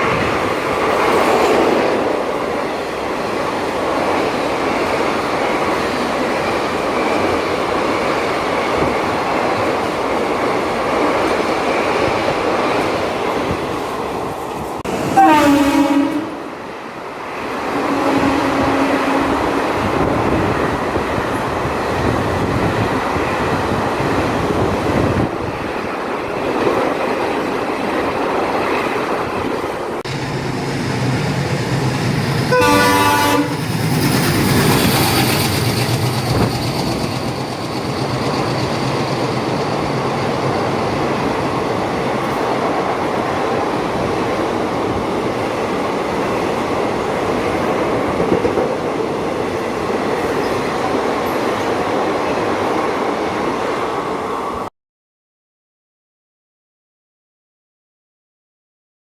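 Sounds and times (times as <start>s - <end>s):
train running on tracks: 0.0s - 54.7s
train horn blast: 15.1s - 16.6s, 17.7s - 19.8s, 32.5s - 33.6s.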